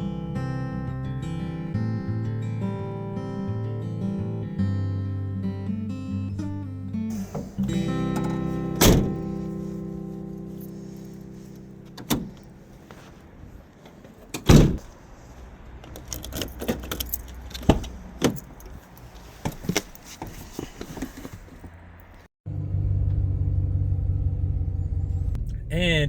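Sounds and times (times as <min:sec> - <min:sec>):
low vehicle rumble: 0:00.0 - 0:19.7, 0:20.7 - 0:26.0
thump: 0:08.8 - 0:09.2, 0:14.5 - 0:14.9
keys jangling: 0:15.8 - 0:20.2.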